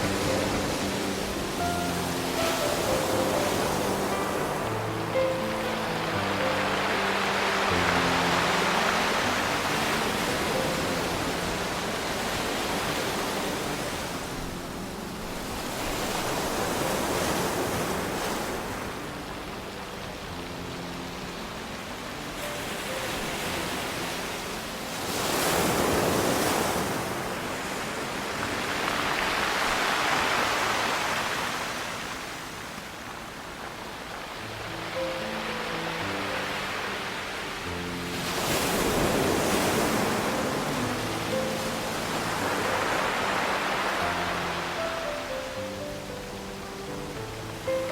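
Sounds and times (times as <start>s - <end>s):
faint soft music: 0.0s - 47.9s
waves on a pebble beach: 0.0s - 47.9s.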